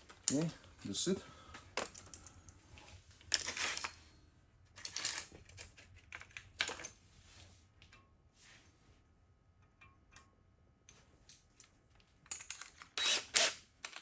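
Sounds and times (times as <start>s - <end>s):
metal tools clinking: 3.3s - 4.0s.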